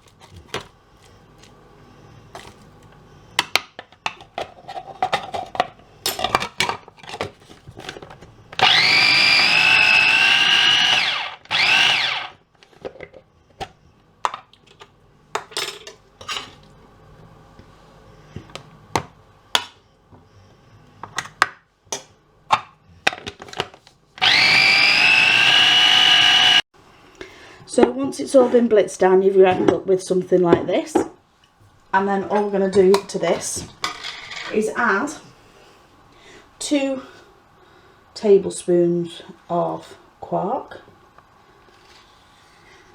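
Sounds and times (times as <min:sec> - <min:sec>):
blender motor whirring: 0:08.6 - 0:12.4, 0:24.2 - 0:26.7.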